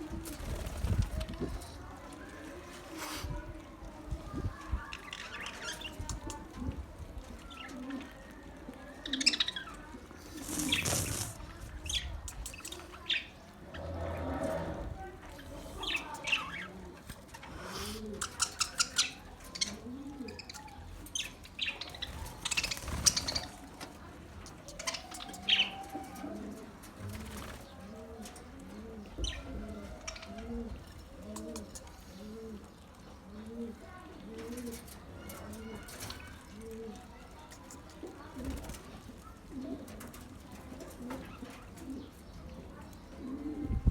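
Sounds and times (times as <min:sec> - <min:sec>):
low cooing notes: 0:13.5 - 0:15.9.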